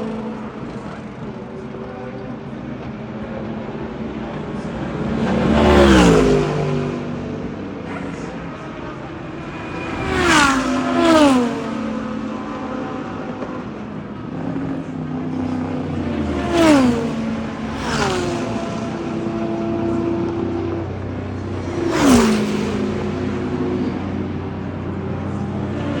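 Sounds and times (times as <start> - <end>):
car engines humming: 0.0 - 26.0
engine swells dropping in pitch: 3.9 - 13.7.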